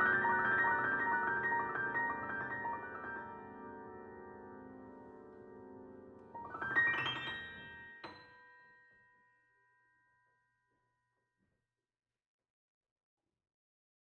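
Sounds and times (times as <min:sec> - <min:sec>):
piano notes ringing out: 0:00.0 - 0:08.8.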